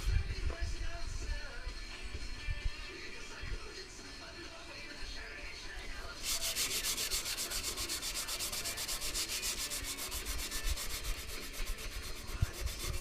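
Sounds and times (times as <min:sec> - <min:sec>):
sanding car body panel: 0:06.2 - 0:13.0.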